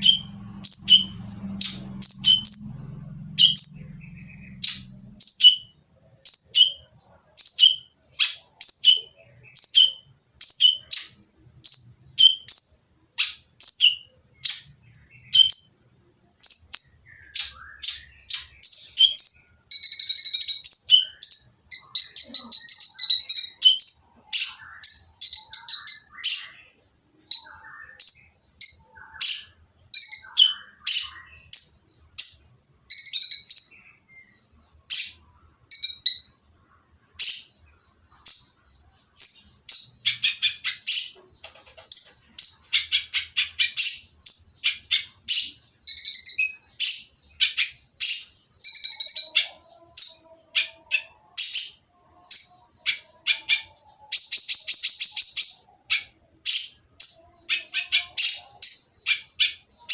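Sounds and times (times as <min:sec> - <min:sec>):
sunbird chirping harshly: 0:00.0 - 0:36.4, 0:38.3 - 0:59.9.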